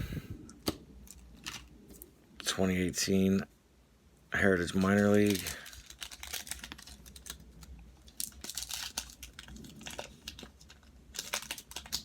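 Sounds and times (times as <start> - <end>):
plastic wrapper crinkling and tearing: 1.0 - 2.0, 4.7 - 12.0.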